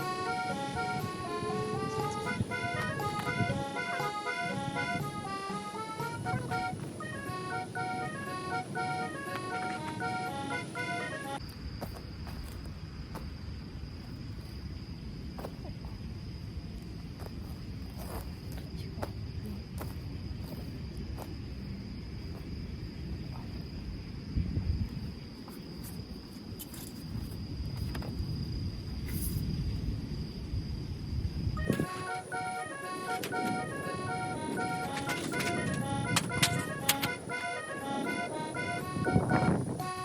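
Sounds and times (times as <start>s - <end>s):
wind buffeting microphone: 0.0s - 8.0s, 22.0s - 25.4s, 27.1s - 32.1s, 38.0s - 40.0s
crickets trilling: 0.0s - 40.0s.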